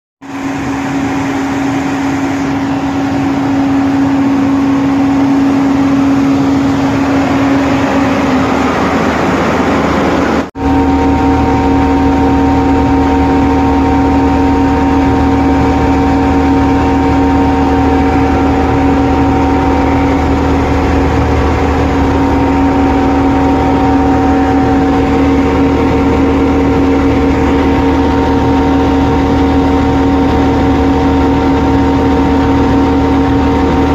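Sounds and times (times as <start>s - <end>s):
heavy machinery engine rumbling: 0.2s - 33.9s
steady machine whine: 0.2s - 33.9s.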